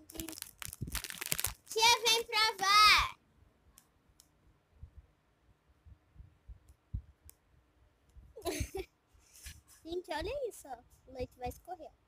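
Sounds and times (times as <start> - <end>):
soft low thumps: 4.7 - 5.1, 5.8 - 7.3.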